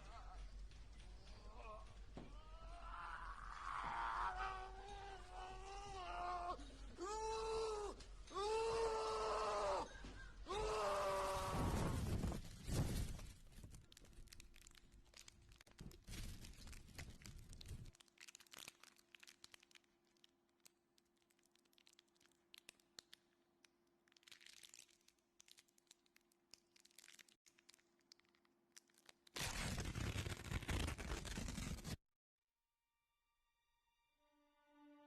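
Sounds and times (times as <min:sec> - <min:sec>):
faint crackles and clicks: 0:00.0 - 0:03.7, 0:11.5 - 0:32.0.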